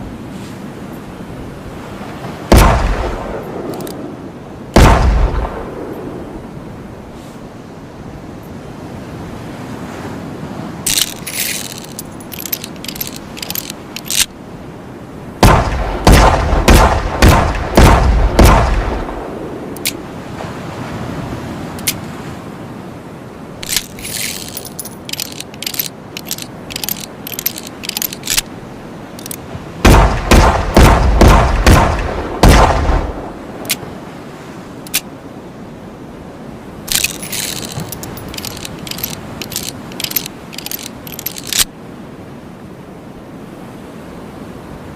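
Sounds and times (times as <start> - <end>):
gunshots: 2.5 - 3.3, 4.8 - 5.5, 15.4 - 19.1, 29.8 - 33.2
revolver clicks and rattles: 36.9 - 41.7.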